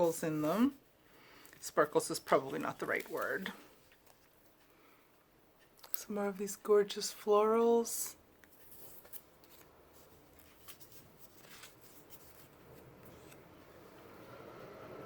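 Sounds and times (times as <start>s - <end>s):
paper sticker sheets rustling: 1.6s - 4.3s, 8.4s - 13.5s.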